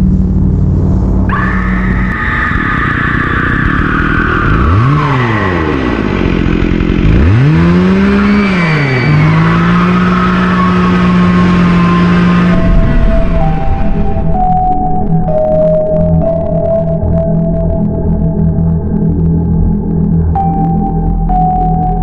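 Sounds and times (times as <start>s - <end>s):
higher sliding tones: 0.0s - 5.4s, 9.3s - 22.0s
eerie swooping drone: 0.0s - 22.0s.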